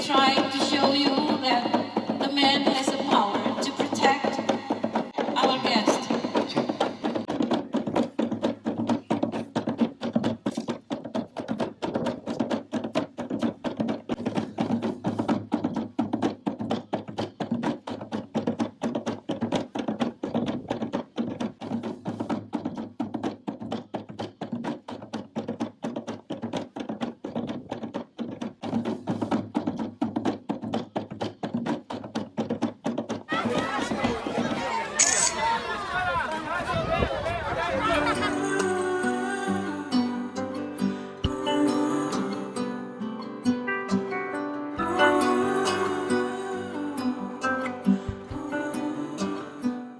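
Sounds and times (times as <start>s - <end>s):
music with fast tapping percussion: 0.0s - 34.4s.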